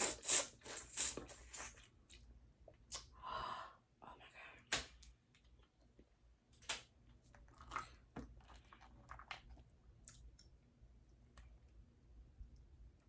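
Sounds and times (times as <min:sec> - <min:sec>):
chewing with wet clicks: 0:06.7 - 0:11.8.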